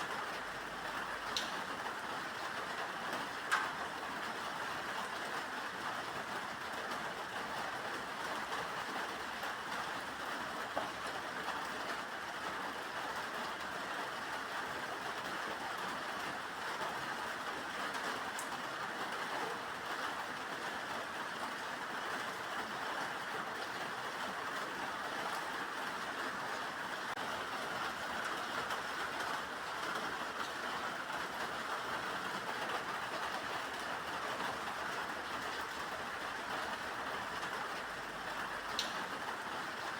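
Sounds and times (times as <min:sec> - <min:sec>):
steady rain falling: 0:00.0 - 0:39.9
faint ticks: 0:38.7 - 0:39.0.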